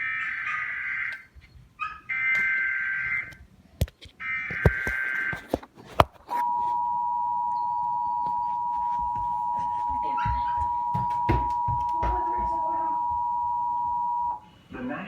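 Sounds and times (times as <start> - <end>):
steady two-tone attention signal: 6.4 - 14.4.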